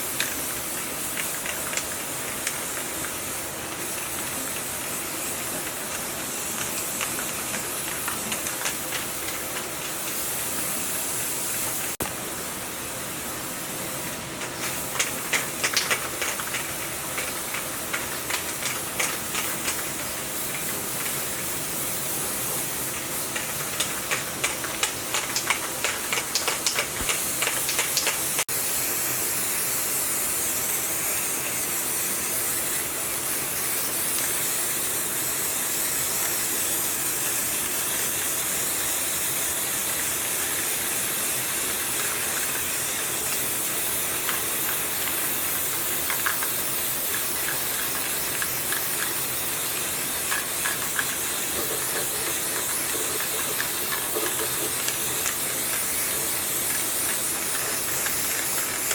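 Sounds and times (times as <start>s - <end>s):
rapid crackly ticks: 14.9s - 21.2s, 23.3s - 28.5s
loud hissing spray: 16.9s - 58.9s.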